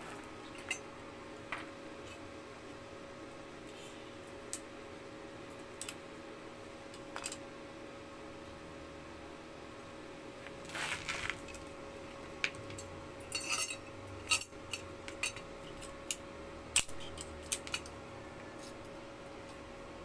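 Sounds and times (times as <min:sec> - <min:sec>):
faint steady hum: 0:00.0 - 0:20.0
metal tools clinking: 0:12.4 - 0:16.2.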